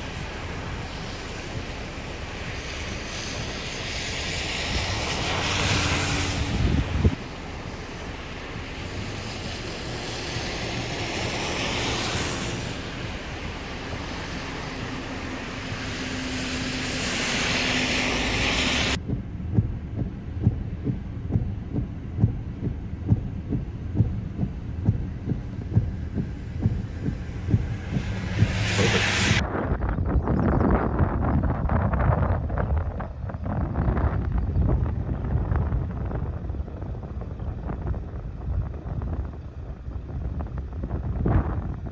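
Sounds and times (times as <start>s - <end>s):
low rumble: 0.0s - 41.9s
storm wind gusting: 0.0s - 41.9s
soft regular thumps: 19.0s - 29.4s.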